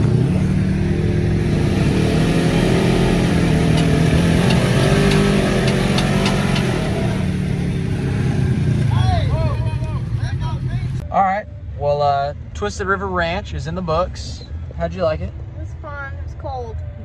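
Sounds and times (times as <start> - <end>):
off-road vehicle engine revving: 0.0 - 11.0
sharp ticks: 0.7 - 9.0.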